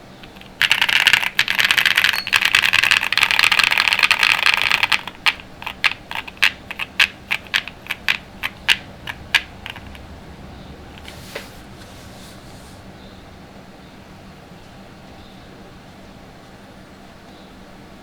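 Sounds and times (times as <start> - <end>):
mechanical keyboard typing: 0.0 - 10.1.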